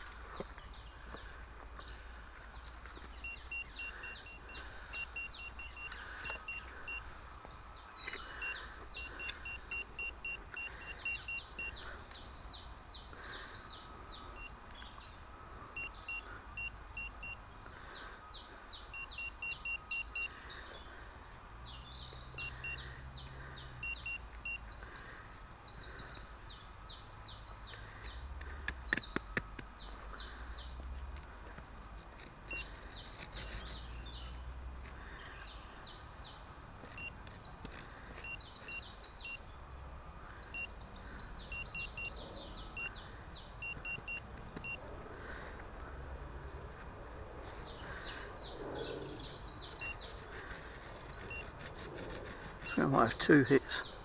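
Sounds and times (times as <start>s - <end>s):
birds singing: 0.0s - 31.1s, 32.2s - 45.5s, 47.5s - 54.0s
metal detector beeping: 3.0s - 7.1s, 8.1s - 11.8s, 15.8s - 17.4s, 18.9s - 20.3s, 22.4s - 22.9s, 23.8s - 24.6s, 32.4s - 32.7s, 36.9s - 39.4s, 40.5s - 40.7s, 41.5s - 43.0s, 43.6s - 44.8s, 49.7s - 50.0s, 51.1s - 51.9s, 52.5s - 53.6s.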